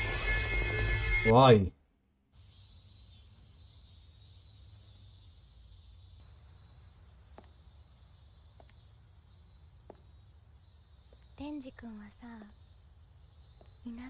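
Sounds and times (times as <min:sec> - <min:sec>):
insects chirring: 0:00.0 - 0:14.0.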